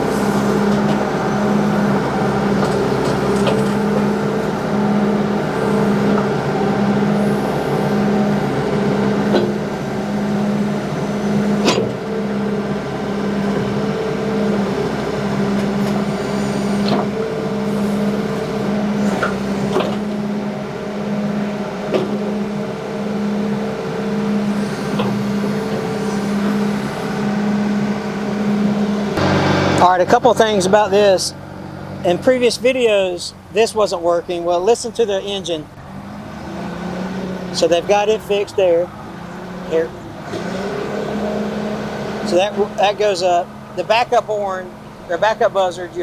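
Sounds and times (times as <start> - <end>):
backup buzzer pulsing: 0.0 - 30.7
diesel engine running: 0.0 - 46.0.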